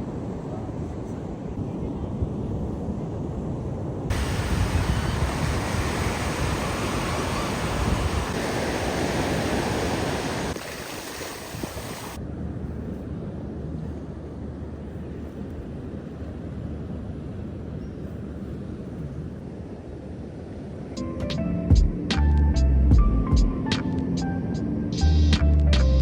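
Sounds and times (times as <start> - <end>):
wind on microphone: 0.0 - 20.9
ocean surf: 4.1 - 12.2.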